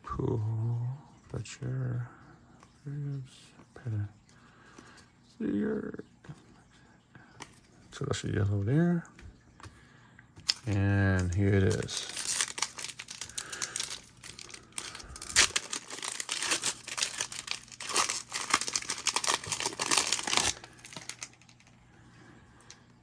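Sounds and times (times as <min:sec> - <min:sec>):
card pack wrapper tearing and crinkling: 0:10.5 - 0:21.7.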